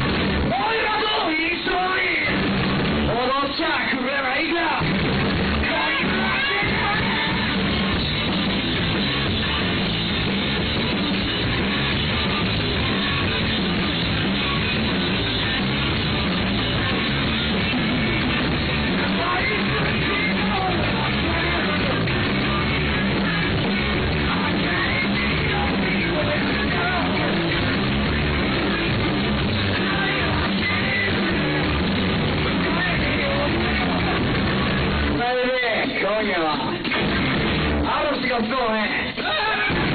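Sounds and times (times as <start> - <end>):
live rock band playing: 0.0 - 3.3, 4.8 - 39.9
person singing and yelling: 0.5 - 2.4, 5.6 - 7.8, 16.6 - 27.8, 29.6 - 31.8, 32.4 - 34.6, 37.9 - 39.9.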